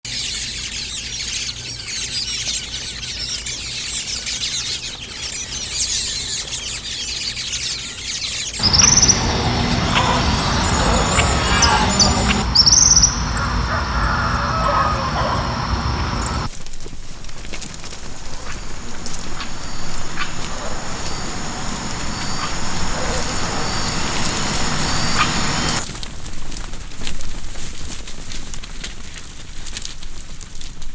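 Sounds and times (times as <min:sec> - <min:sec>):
flock of birds chirping: 0:08.6 - 0:16.5, 0:17.9 - 0:25.8
noisy ambience: 0:08.6 - 0:16.5, 0:17.9 - 0:25.8
sharp bird chirps: 0:08.6 - 0:16.5, 0:18.2 - 0:25.8
steady high-pitched tones: 0:08.6 - 0:16.5, 0:18.1 - 0:25.8.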